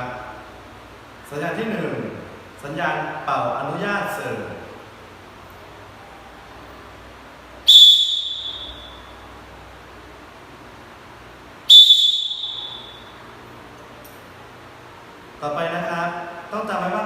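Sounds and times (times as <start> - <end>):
referee's whistle blasts: 7.7 - 9.2, 11.7 - 13.2.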